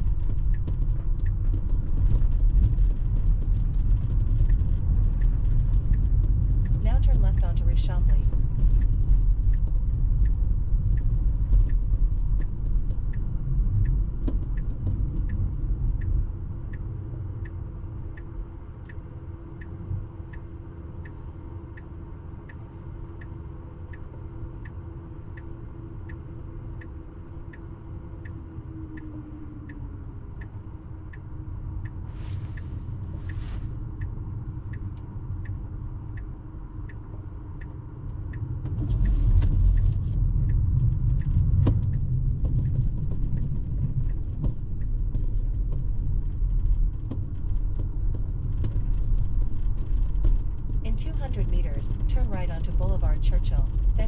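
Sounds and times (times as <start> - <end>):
road rumble: 0.0 - 54.0
turn signal clicking: 4.4 - 46.4.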